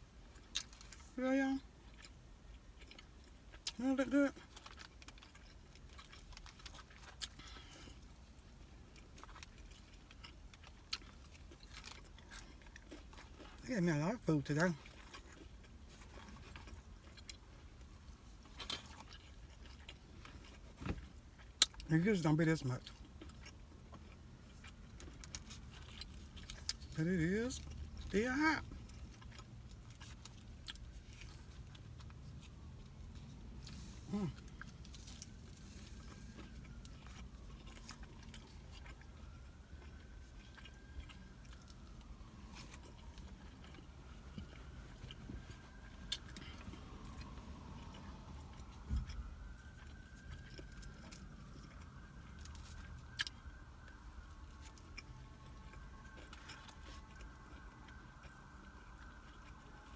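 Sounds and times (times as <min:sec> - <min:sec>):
person chewing: 0:00.0 - 0:01.1, 0:01.7 - 0:13.6, 0:14.6 - 0:21.9, 0:22.8 - 0:59.9
low steady hum: 0:00.0 - 0:59.9.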